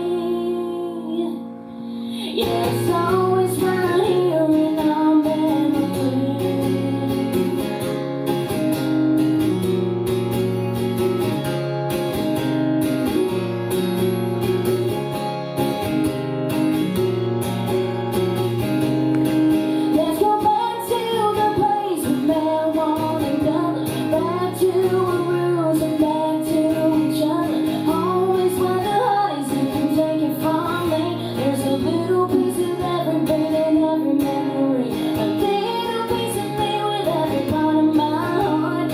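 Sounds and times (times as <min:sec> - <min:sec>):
woman singing: 0:00.0 - 0:08.0, 0:19.7 - 0:38.9
acoustic guitar chords: 0:00.0 - 0:38.9.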